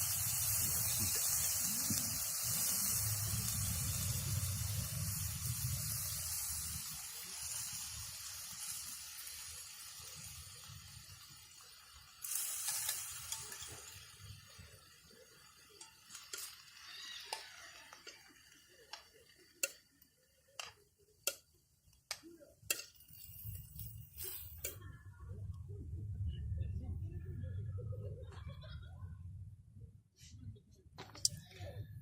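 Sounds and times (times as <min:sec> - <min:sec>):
food sizzling in a pan: 0:00.0 - 0:21.5.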